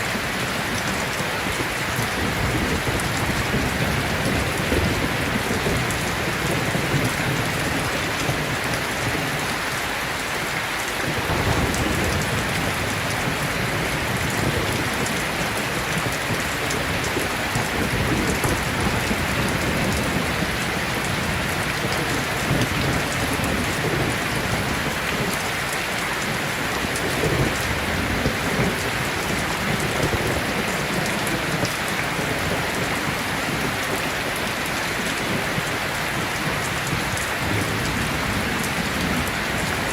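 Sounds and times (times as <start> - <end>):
dense rain falling: 0.0 - 39.9.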